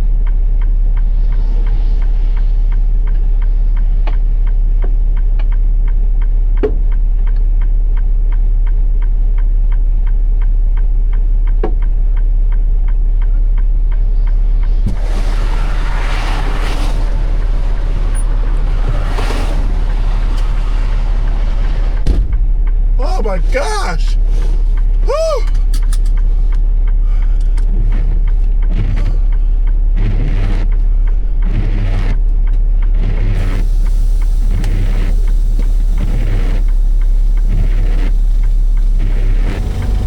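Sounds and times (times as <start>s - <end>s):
broad rushing noise: 14.8s - 25.6s
truck engine idling: 14.9s - 27.6s, 33.4s - 40.0s.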